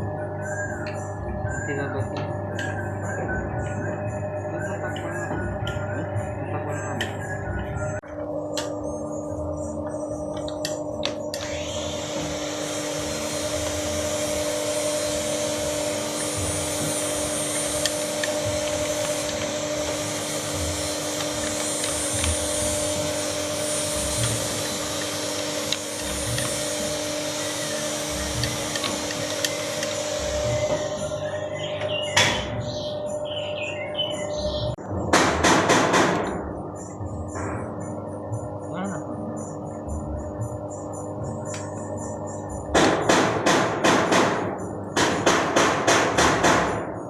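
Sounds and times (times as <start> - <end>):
electric motor hum: 2.7 - 34.7
fan hissing air: 7.9 - 31.6.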